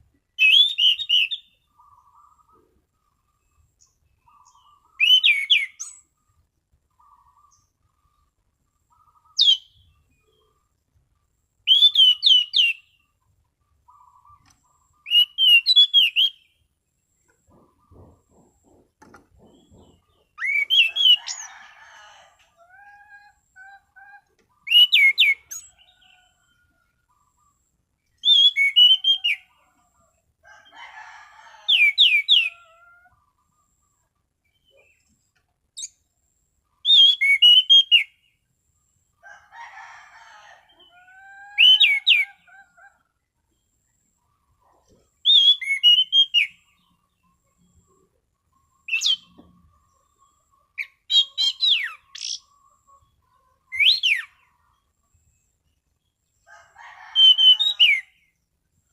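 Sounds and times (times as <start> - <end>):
thrush singing whistled phrases: 0.4 - 1.6, 11.6 - 12.9, 15.0 - 16.5, 20.4 - 21.2, 24.7 - 25.6, 28.2 - 29.5, 36.8 - 38.2, 53.7 - 54.4
quiet low bird whistles: 0.4 - 2.7, 11.6 - 13.0, 19.1 - 21.4.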